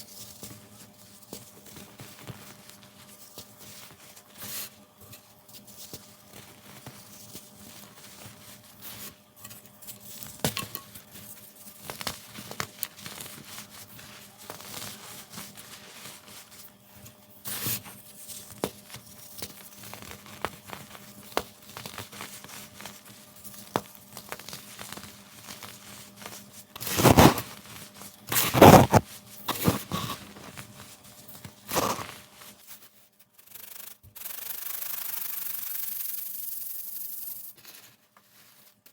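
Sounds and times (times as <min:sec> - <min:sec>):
baking soda crunching by hand: 0:26.8 - 0:27.6, 0:28.3 - 0:30.6, 0:31.6 - 0:32.2.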